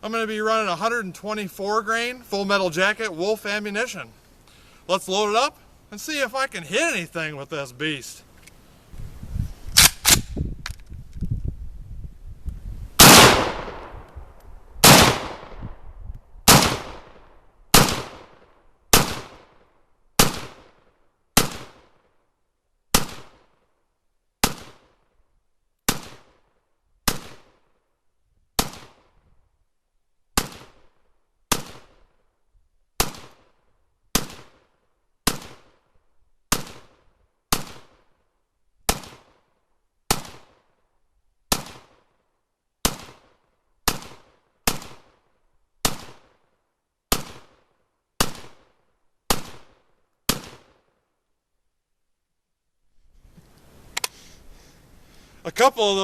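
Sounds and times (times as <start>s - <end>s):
pistol gunshots with echo: 13.0s - 14.1s, 14.8s - 15.7s, 16.5s - 19.6s.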